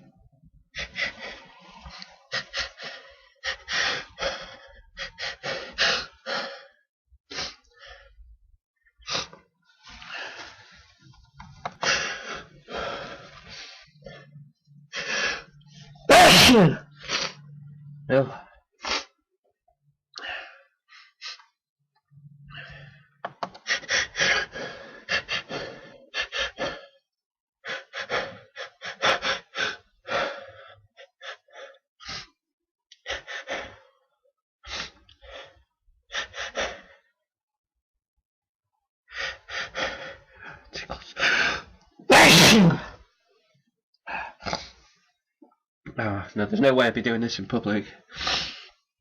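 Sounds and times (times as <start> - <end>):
man sneezing: 16.1 - 16.8, 42.1 - 43.0.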